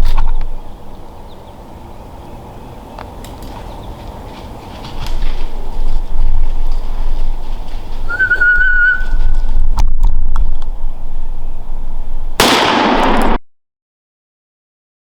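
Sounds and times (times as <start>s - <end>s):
wavering whistle: 8.1s - 9.5s
rifle shot with echo: 12.4s - 13.4s.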